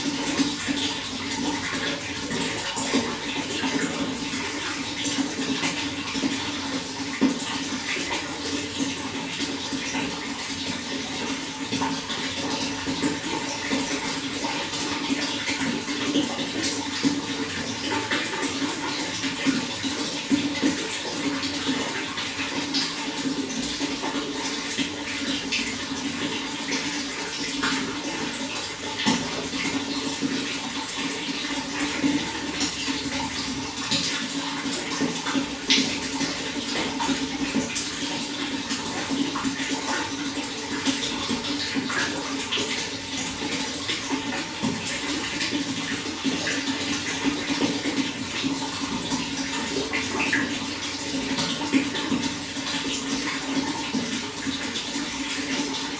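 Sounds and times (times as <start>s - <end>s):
running water: 0.0s - 55.9s
small splashes and drips: 0.0s - 55.9s.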